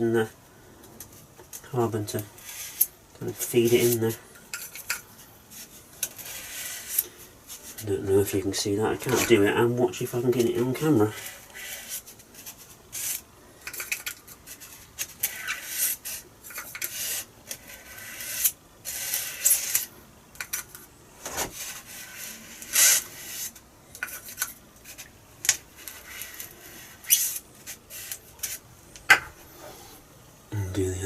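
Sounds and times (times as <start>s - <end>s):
rod scraping along foam: 5.5s - 7.8s, 8.9s - 13.2s, 14.4s - 19.9s, 21.3s - 28.6s.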